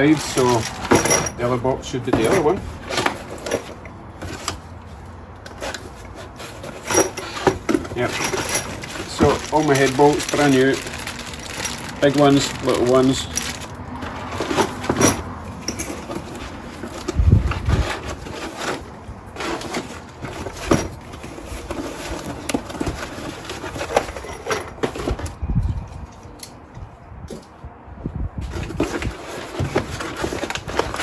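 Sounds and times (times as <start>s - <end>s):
metal parts clinking: 0.0s - 4.5s, 5.5s - 17.2s, 19.4s - 26.6s
cardboard boxes handled: 0.0s - 26.1s, 28.4s - 31.0s.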